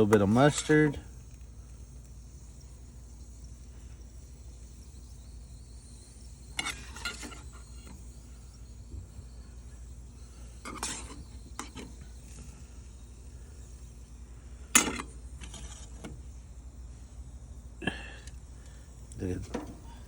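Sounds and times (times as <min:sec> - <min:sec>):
low steady hum: 0:00.0 - 0:20.0
utensils scraping and clinking dishes: 0:06.5 - 0:08.0, 0:10.6 - 0:12.5.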